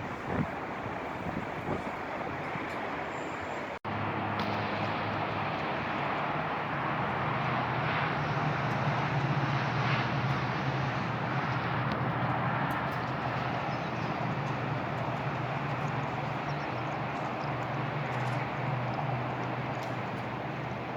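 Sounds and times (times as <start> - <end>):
low engine hum of traffic: 0.0 - 20.9.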